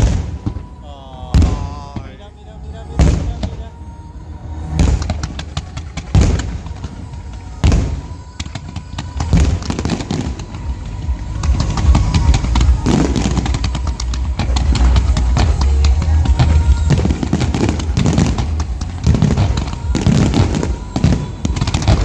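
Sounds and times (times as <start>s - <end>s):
fireworks bangs: 0.0s - 22.0s
fireworks crackling: 0.0s - 22.0s
music playing: 0.0s - 22.0s.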